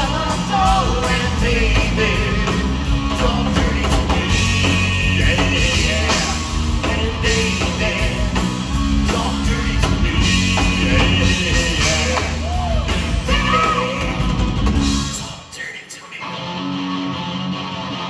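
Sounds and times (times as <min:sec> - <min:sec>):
person singing: 0:00.0 - 0:14.4
live rock band playing: 0:00.0 - 0:15.5, 0:16.2 - 0:18.0.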